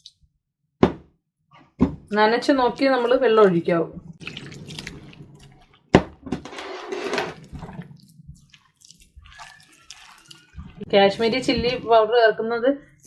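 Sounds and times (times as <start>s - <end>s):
wet paste mixed by hand: 2.5s - 6.0s, 7.4s - 11.8s
water pouring into bowl: 4.1s - 5.9s, 7.2s - 11.6s.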